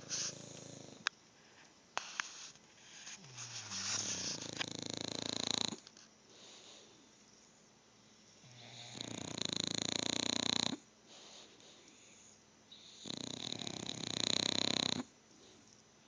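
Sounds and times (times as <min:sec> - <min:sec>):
pet snoring: 0:00.0 - 0:01.1, 0:02.3 - 0:06.8, 0:08.4 - 0:15.6
quiet breathing: 0:00.0 - 0:09.4, 0:10.2 - 0:16.0.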